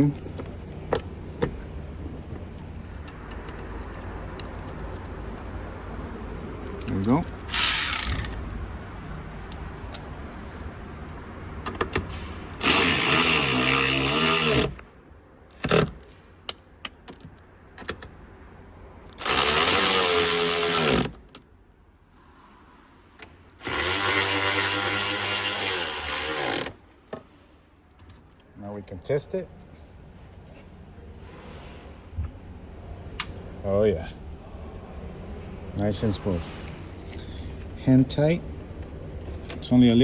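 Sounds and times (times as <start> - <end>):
power tool motor whirring: 7.5 - 8.4, 12.6 - 14.8, 19.2 - 21.2, 23.6 - 26.8.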